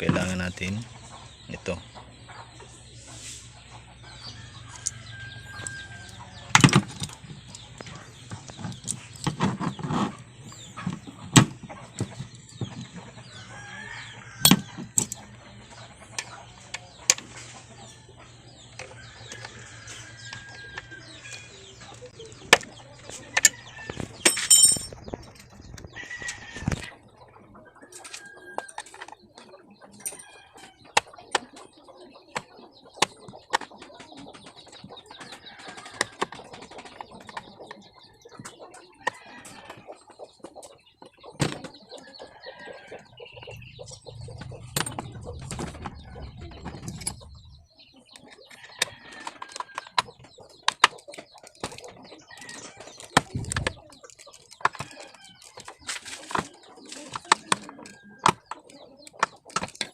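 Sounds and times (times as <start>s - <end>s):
chickens calling: 0.0s - 59.9s
low rumble: 43.4s - 47.7s
plastic clicks and knocks: 48.2s - 59.9s.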